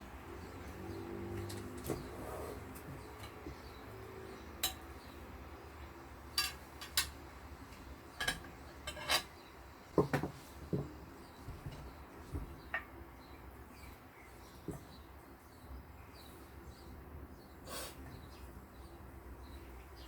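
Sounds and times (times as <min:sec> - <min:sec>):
utensils and dishes clinking: 0:01.2 - 0:03.6, 0:04.5 - 0:05.0, 0:06.3 - 0:07.2, 0:08.1 - 0:09.4.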